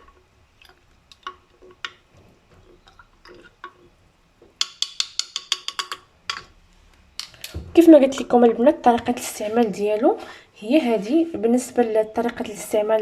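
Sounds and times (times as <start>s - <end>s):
spoon clicking against glass: 4.6s - 6.4s.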